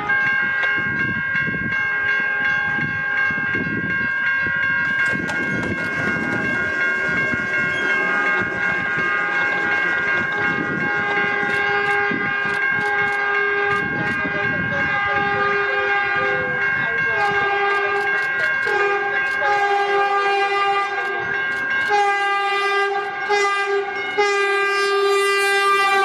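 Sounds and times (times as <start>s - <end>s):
train horn long blast: 0.0s - 0.5s, 7.3s - 21.3s, 21.9s - 26.0s
train wheels clattering: 4.8s - 13.9s.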